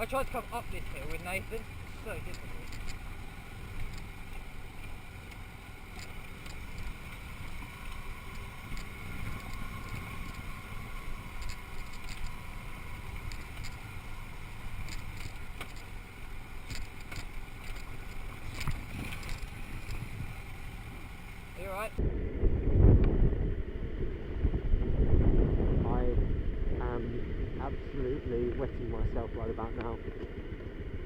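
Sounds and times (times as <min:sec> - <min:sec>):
motorcycle engine running: 0:00.0 - 0:31.0
wind rumbling on microphone: 0:00.0 - 0:31.0
sharp clicks and knocks: 0:02.2 - 0:03.0, 0:04.8 - 0:10.5, 0:11.3 - 0:12.4, 0:14.8 - 0:15.9, 0:16.6 - 0:20.1.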